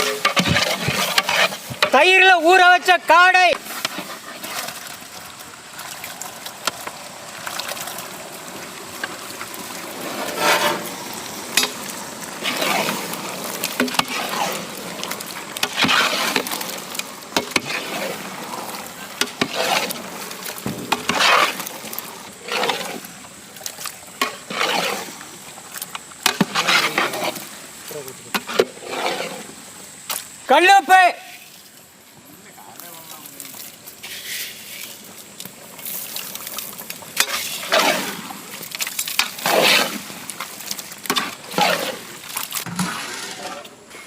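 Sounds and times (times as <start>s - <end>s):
ladle stirring and scraping pot: 0.0s - 2.0s, 9.1s - 27.6s, 28.3s - 29.6s, 34.0s - 35.0s, 35.8s - 44.0s
hiss of cooking: 0.0s - 44.0s.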